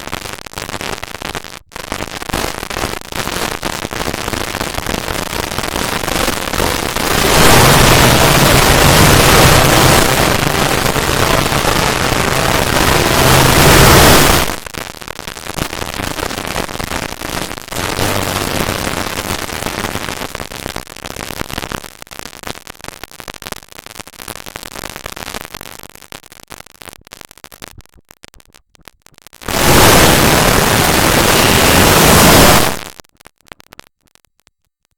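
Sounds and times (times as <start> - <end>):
loud harsh static noise: 0.0 - 21.8, 29.4 - 33.0
crackle of small clicks: 0.0 - 34.9.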